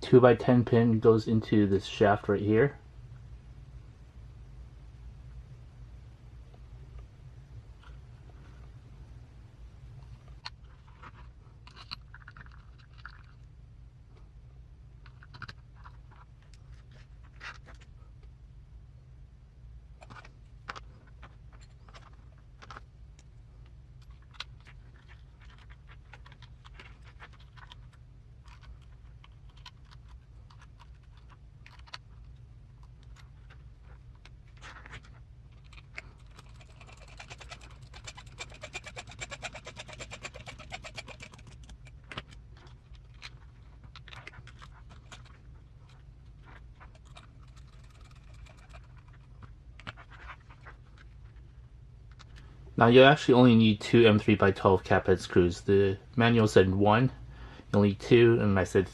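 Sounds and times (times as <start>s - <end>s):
steady low hum: 0.0s - 58.9s
small parts clicking and tapping: 10.0s - 13.5s, 15.0s - 18.3s, 20.0s - 51.4s
fast dense ticking: 36.0s - 42.2s.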